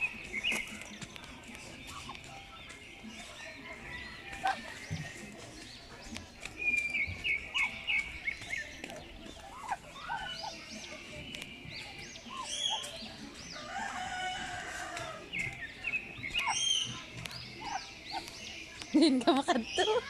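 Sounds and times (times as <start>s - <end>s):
birds chirping shrilly: 0.0s - 20.0s
low bird call: 6.5s - 19.0s.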